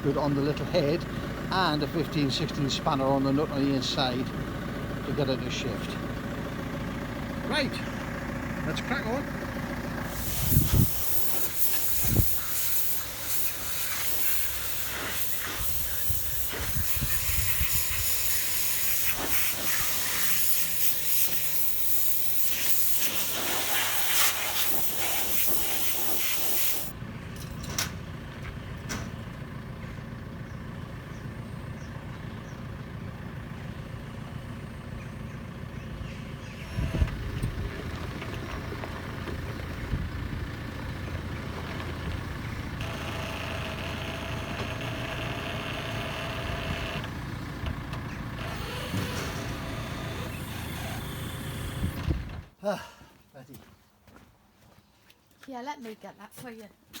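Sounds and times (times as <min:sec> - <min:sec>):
low engine hum: 0:00.0 - 0:20.1, 0:26.9 - 0:52.6
pressure washer jet hissing: 0:10.1 - 0:26.9.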